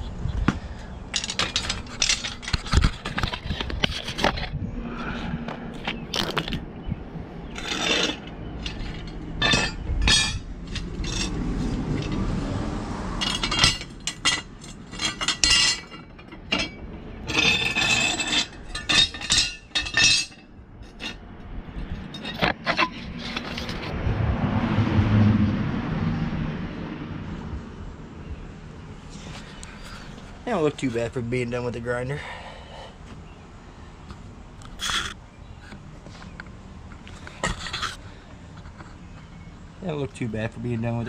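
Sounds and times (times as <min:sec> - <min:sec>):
metal blades clinking: 0:07.6 - 0:11.4, 0:13.2 - 0:21.1
low rumble: 0:23.8 - 0:28.0.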